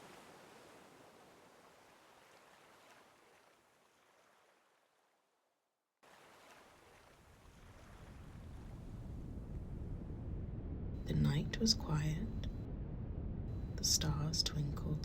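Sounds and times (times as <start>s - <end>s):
ocean waves: 0.0s - 5.4s, 6.0s - 9.5s.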